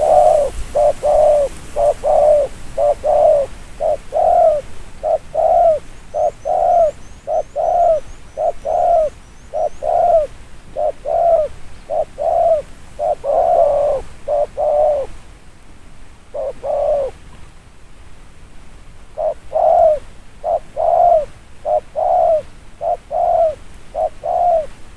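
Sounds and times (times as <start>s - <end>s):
small bird chirping: 0.0s - 15.1s
dove cooing: 0.0s - 15.2s, 16.3s - 17.2s, 19.2s - 24.8s.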